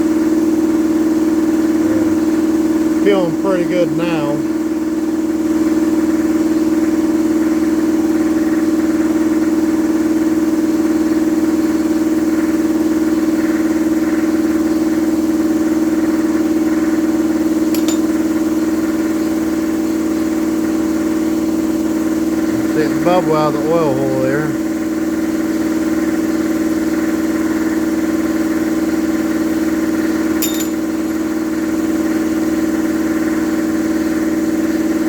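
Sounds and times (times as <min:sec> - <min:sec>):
air compressor humming: 0:00.1 - 0:05.6, 0:21.8 - 0:25.5.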